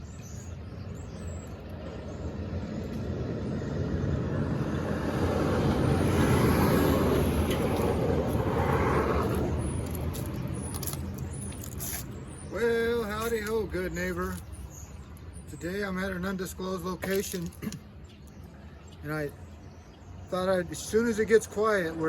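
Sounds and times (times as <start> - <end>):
vehicle passing on highway: 1.0 - 14.0.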